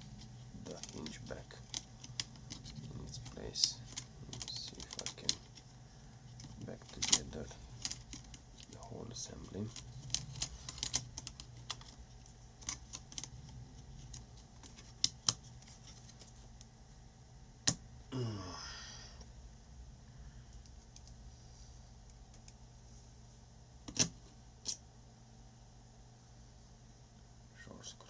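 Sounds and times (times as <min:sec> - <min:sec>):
steady low hum: 0:00.0 - 0:28.0
plastic laptop parts clicking: 0:00.7 - 0:05.6, 0:06.4 - 0:08.8, 0:09.6 - 0:12.0, 0:12.6 - 0:13.3, 0:23.9 - 0:24.8.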